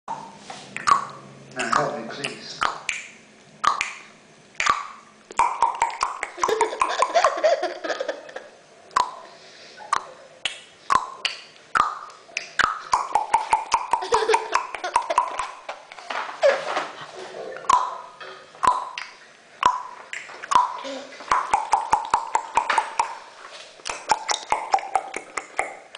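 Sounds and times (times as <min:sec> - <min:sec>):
tongue clicks and clucks: 0:00.1 - 0:07.2, 0:08.9 - 0:09.2, 0:09.8 - 0:15.6, 0:17.6 - 0:18.0, 0:18.6 - 0:23.2, 0:23.8 - 0:25.9.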